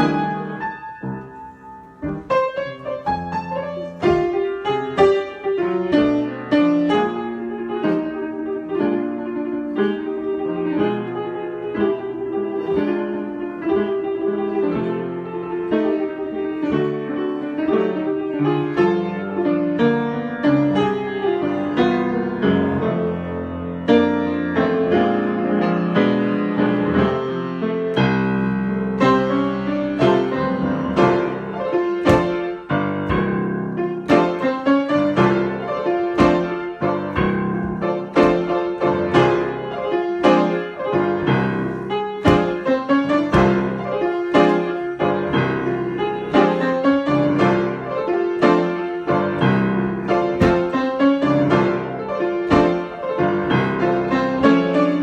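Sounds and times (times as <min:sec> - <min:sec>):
solo piano improvisation: 0:00.0 - 0:55.0.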